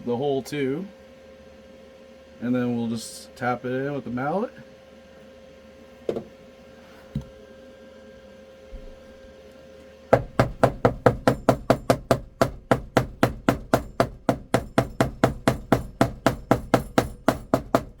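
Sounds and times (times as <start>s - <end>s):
mallet tapping wood plug: 10.2s - 18.0s.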